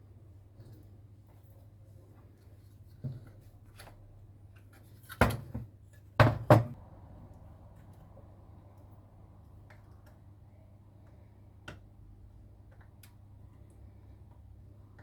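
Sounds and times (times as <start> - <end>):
objects knocking on workbench: 5.2 - 6.8.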